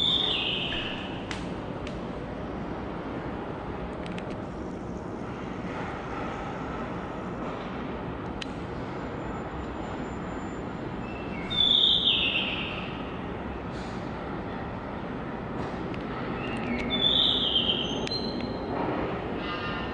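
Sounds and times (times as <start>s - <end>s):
bird singing: 0.0s - 1.3s, 11.0s - 13.1s, 16.4s - 18.6s.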